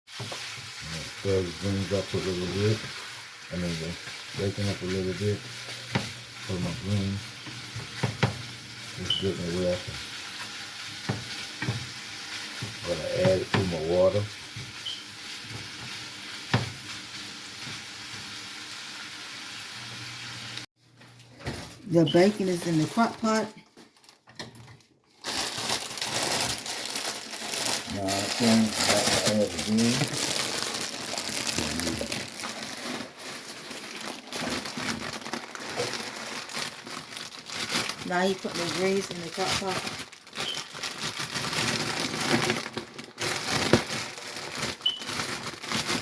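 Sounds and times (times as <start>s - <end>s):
bacon sizzling in a pan: 0.1s - 20.7s, 26.4s - 33.1s, 34.1s - 37.2s, 37.9s - 41.2s
leaves rustling and crinkling: 3.5s - 8.0s, 8.7s - 16.5s, 25.2s - 46.0s.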